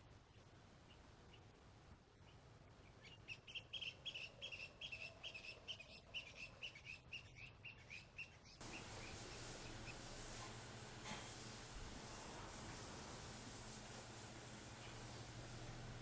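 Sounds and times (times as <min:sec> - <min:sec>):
bird chirping: 0:02.2 - 0:10.2
low steady hum: 0:06.5 - 0:16.0.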